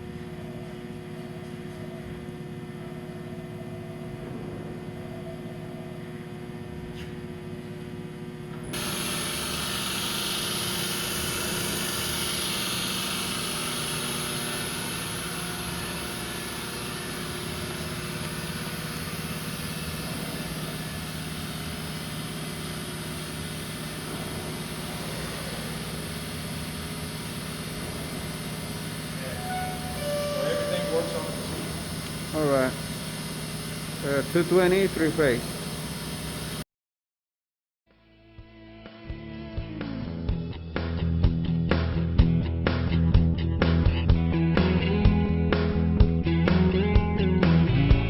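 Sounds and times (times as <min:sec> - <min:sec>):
milling machine motor hum: 0:00.0 - 0:36.6
loud hiss: 0:08.8 - 0:36.5.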